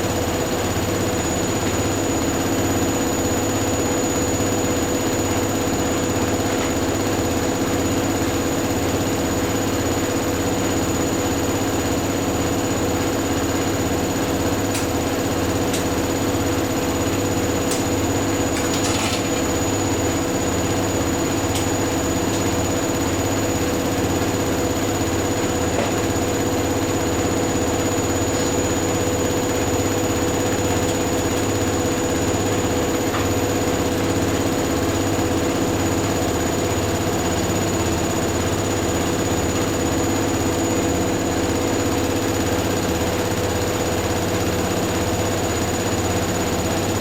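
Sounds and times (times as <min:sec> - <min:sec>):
washing machines spinning: 0:00.0 - 0:47.0.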